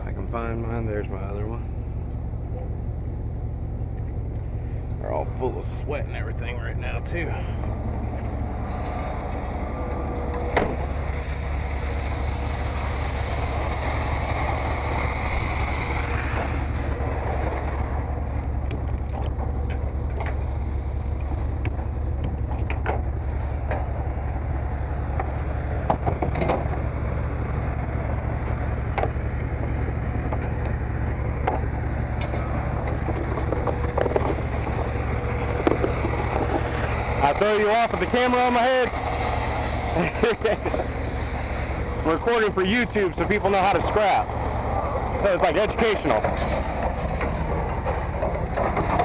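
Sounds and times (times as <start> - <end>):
steady low rumble: 0.0 - 49.0
scrap metal clanking: 32.2 - 49.0.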